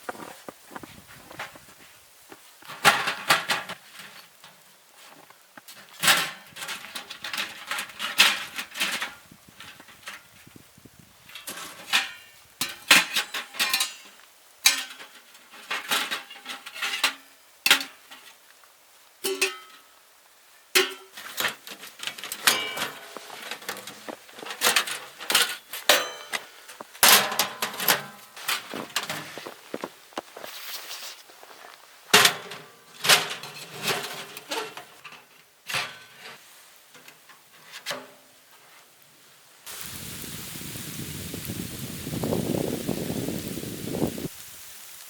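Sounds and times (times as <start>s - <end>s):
metal cookware clattering: 2.7s - 4.2s, 11.3s - 18.3s, 19.2s - 19.8s, 20.8s - 29.3s, 32.2s - 36.4s.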